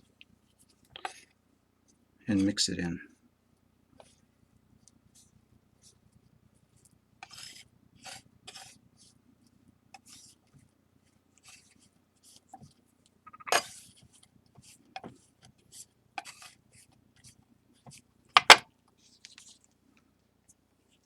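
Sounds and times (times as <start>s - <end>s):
palette knife scraping a tray: 7.2s - 8.8s, 16.2s - 16.6s.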